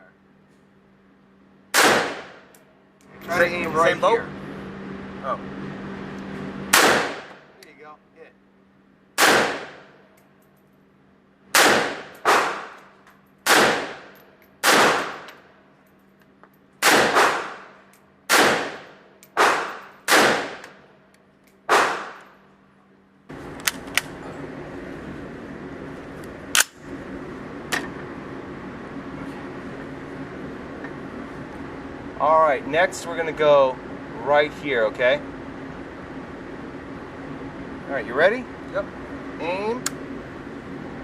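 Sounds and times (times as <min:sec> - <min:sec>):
steady hum: 0:00.0 - 0:41.0
rifle single shots: 0:01.7 - 0:02.5, 0:06.7 - 0:07.4, 0:09.2 - 0:10.0, 0:11.5 - 0:12.8, 0:13.4 - 0:15.3, 0:16.8 - 0:17.7, 0:18.3 - 0:20.8, 0:21.7 - 0:22.2
sharp cracks: 0:01.8 - 0:02.6, 0:11.5 - 0:15.4, 0:16.8 - 0:17.7, 0:18.3 - 0:20.8, 0:21.7 - 0:22.3.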